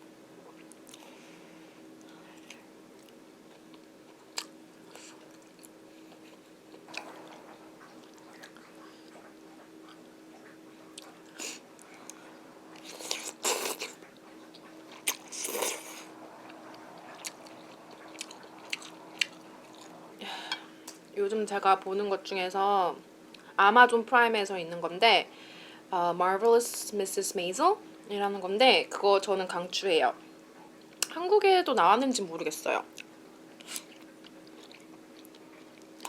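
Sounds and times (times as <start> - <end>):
faint steady hum: 0.0 - 36.0
person chewing and biting: 3.0 - 10.0, 10.9 - 20.0.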